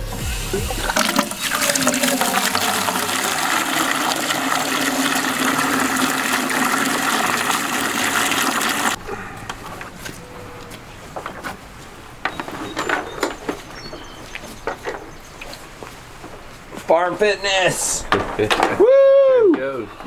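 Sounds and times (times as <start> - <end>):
water running into a container: 0.0 - 9.0.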